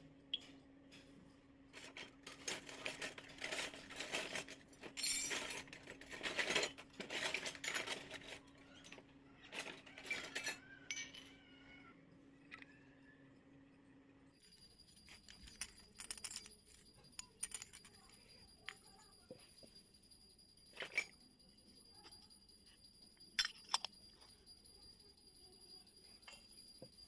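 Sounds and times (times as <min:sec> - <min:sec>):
toy pieces clicking and rattling: 0:01.8 - 0:11.4, 0:14.4 - 0:19.4, 0:23.4 - 0:24.1.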